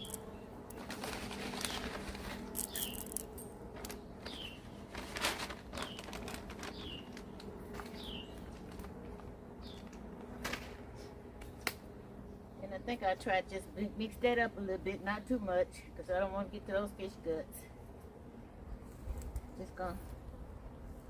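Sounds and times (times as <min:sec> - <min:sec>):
rustling and scraping: 0:00.0 - 0:11.2
bird calling: 0:02.6 - 0:03.2, 0:07.8 - 0:08.6.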